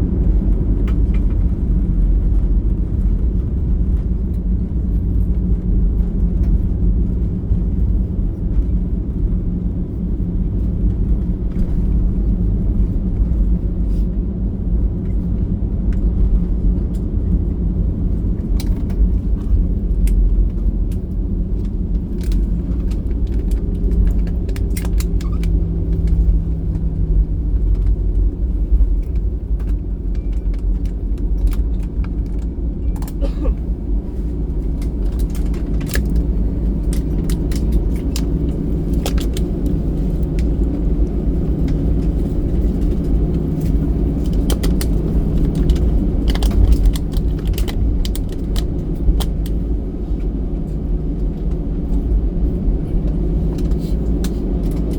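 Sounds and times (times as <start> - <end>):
aircraft cabin low rumble: 0.0 - 54.9
jet engines humming: 16.0 - 54.9.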